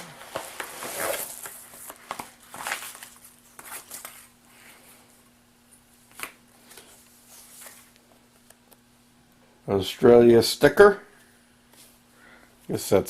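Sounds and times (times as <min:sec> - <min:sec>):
packaging crinkling and rustling: 0:00.0 - 0:04.3.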